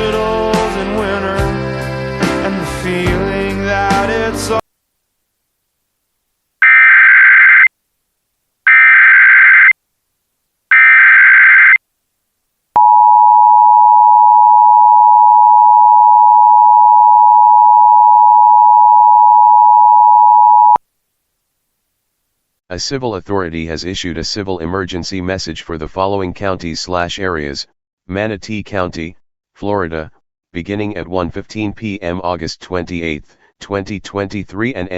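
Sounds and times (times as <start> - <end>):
two-tone attention signal: 12.8 - 20.8.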